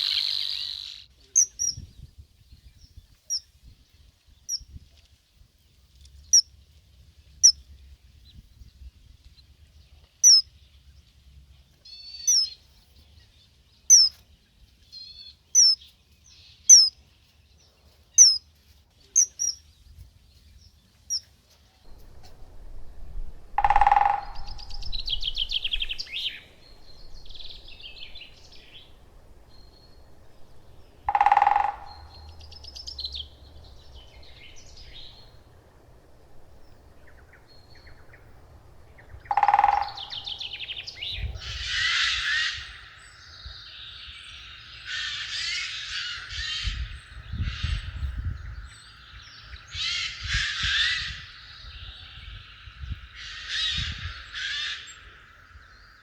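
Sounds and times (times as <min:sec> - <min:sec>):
lower bird call: 0:00.0 - 0:02.1, 0:21.9 - 0:56.0
high falling bird chirps: 0:00.0 - 0:02.2, 0:21.9 - 0:56.0
birds twittering: 0:00.0 - 0:03.5, 0:21.9 - 0:56.0.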